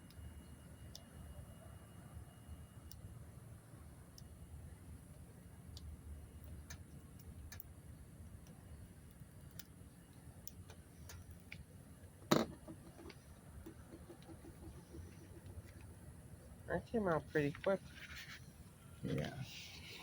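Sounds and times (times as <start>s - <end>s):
small clicks and ticks: 5.7s - 7.7s, 8.4s - 11.7s.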